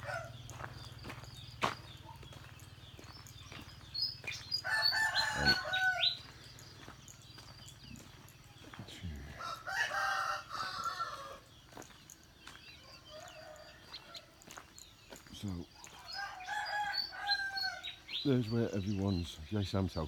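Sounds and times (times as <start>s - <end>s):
rooster crowing: 0.0s - 0.4s, 4.6s - 6.3s, 9.4s - 11.4s, 12.9s - 14.3s, 16.1s - 18.0s.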